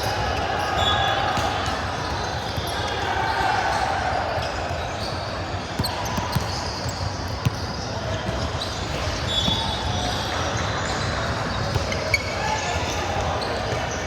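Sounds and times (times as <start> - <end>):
murmur of voices: 0.0 - 14.0.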